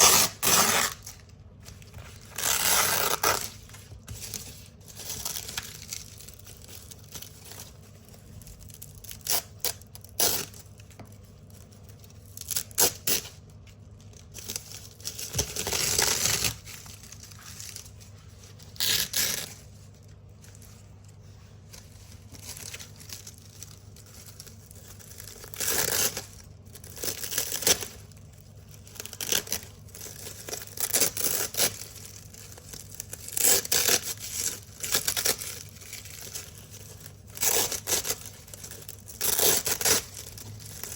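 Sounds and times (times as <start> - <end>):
velcro strips ripping: 0.0 - 1.2, 2.2 - 3.5, 8.7 - 10.6, 18.8 - 19.6, 22.4 - 26.3, 28.9 - 40.9.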